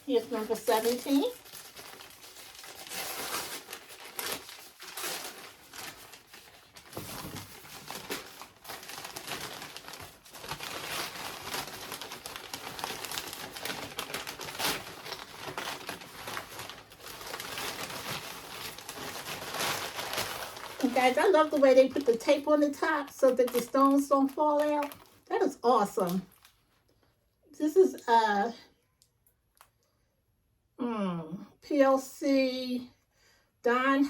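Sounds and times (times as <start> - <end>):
packaging crinkling: 0.0 - 26.9.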